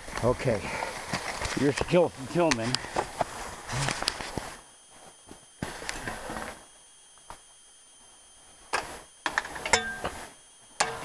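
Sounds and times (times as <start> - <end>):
camera handling rustles and knocks: 3.9 - 4.5.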